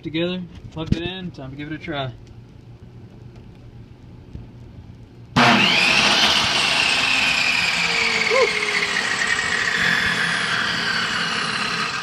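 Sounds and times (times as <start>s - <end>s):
table saw motor whining: 5.4s - 12.0s.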